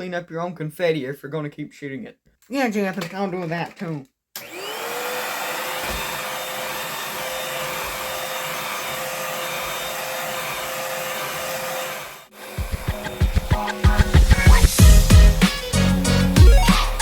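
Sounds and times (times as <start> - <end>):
vacuum cleaner running: 4.4 - 17.0
music: 12.5 - 17.0.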